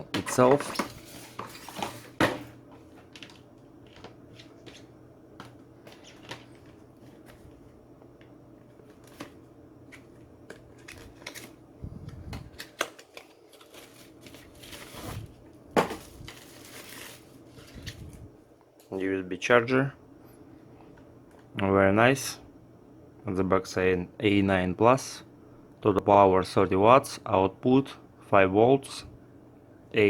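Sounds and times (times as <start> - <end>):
plastic packaging rustling: 0.4 - 7.8, 8.7 - 18.3.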